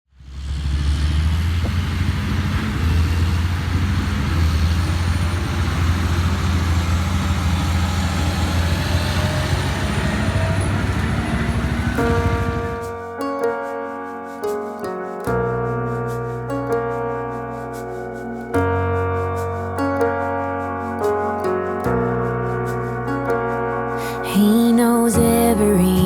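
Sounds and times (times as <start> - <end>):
heavy machinery engine droning: 0.2 - 13.2.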